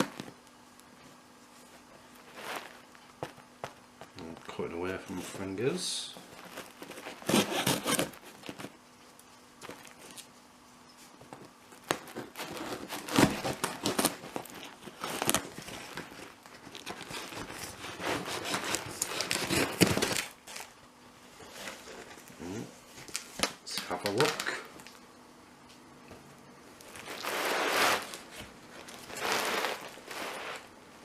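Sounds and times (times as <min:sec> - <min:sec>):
cardboard crinkling and tearing: 0:05.2 - 0:08.8, 0:11.8 - 0:20.8, 0:26.8 - 0:30.7
blade cutting cardboard and tape: 0:06.8 - 0:08.6, 0:11.9 - 0:20.6, 0:27.0 - 0:28.2.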